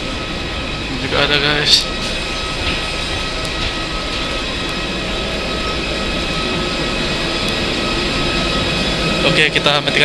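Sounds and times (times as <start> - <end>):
jet engines whining: 0.0 - 10.0.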